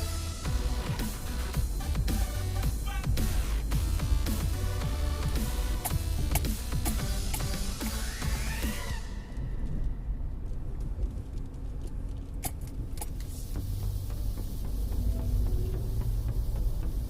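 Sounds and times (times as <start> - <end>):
vehicle rumbling over rough ground: 9.1 - 17.0.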